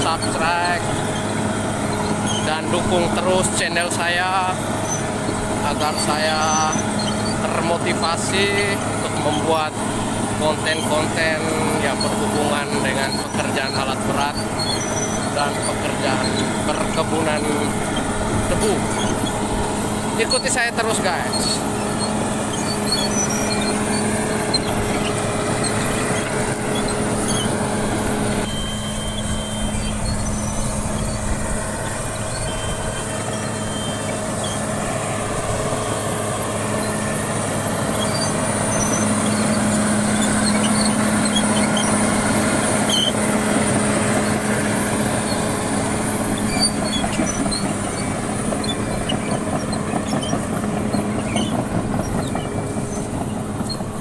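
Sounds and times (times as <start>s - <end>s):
bulldozer diesel engine running: 0.0s - 54.0s.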